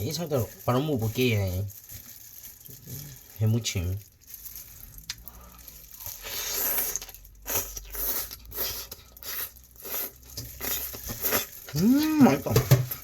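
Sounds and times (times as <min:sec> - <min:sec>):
person chewing crunchy food: 0:04.3 - 0:12.5.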